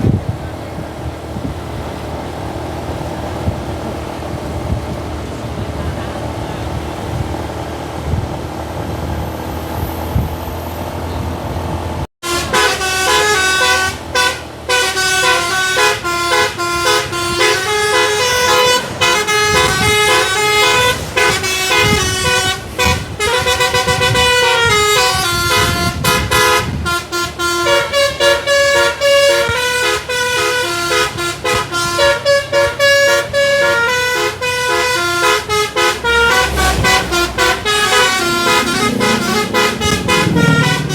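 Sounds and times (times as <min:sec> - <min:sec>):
low vehicle rumble: 0:00.0 - 0:40.9
musical air horn playing tune: 0:12.2 - 0:40.9.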